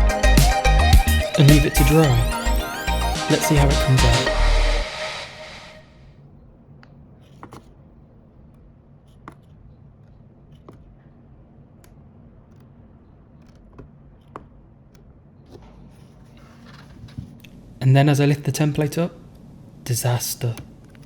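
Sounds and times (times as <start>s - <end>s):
background music: 0.0s - 5.9s.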